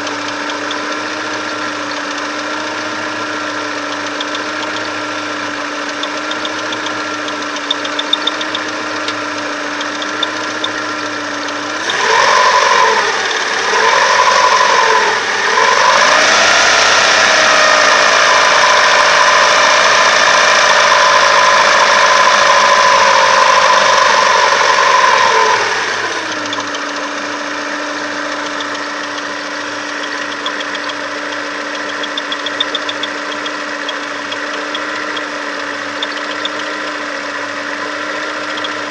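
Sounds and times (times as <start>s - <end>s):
car engine idling and revving: 0.0s - 38.9s
engine whistle: 11.7s - 27.2s.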